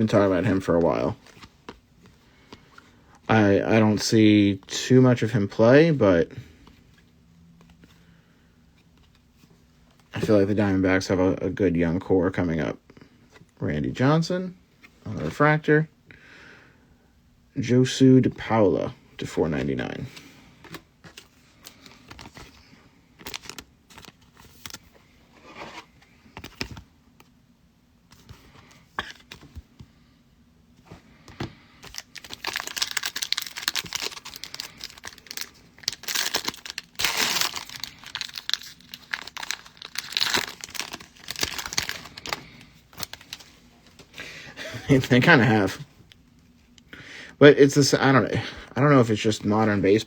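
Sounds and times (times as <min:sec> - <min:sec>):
cards being handled: 0:19.6 - 0:27.4, 0:30.9 - 0:44.2
foil wrapper torn and crinkled: 0:31.9 - 0:43.5.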